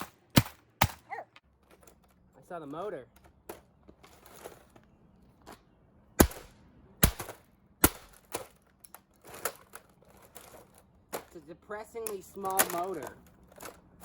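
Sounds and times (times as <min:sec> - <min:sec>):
loud sharp blows or snaps: 0:06.2 - 0:08.2
plastic housing clicking and cracking: 0:12.0 - 0:13.8.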